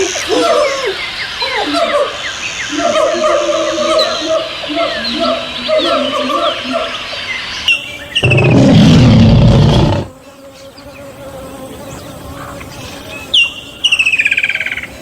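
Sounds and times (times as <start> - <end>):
high chirping: 8.0 - 10.1.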